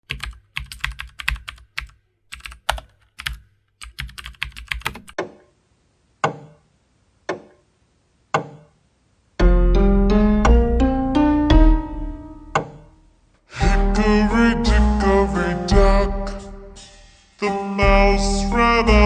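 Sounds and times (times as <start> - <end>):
computer keyboard typing: 0.0 - 5.2.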